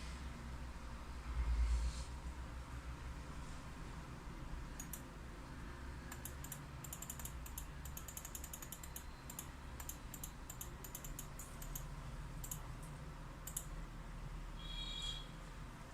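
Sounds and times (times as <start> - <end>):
rapid light clicks: 6.1 - 12.6, 13.4 - 13.7.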